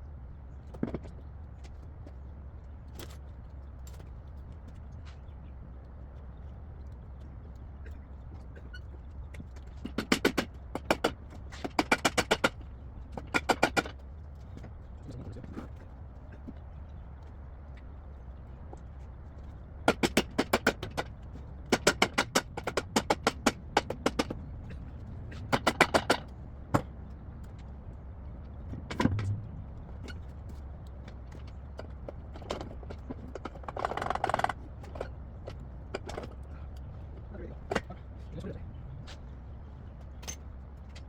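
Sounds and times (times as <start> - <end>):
metal knock: 28.9 - 29.5.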